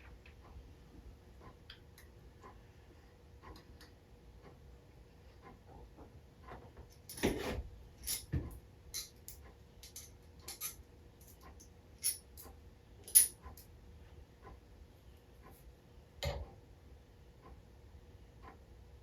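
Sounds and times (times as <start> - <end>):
metal parts clinking: 8.0 - 8.3, 9.8 - 11.4, 12.0 - 12.4, 13.0 - 13.4.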